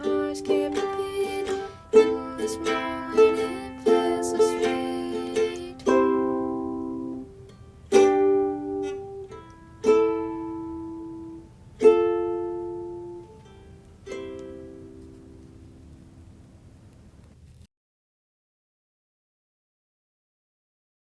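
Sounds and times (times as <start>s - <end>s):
ukulele strumming: 0.0s - 16.2s.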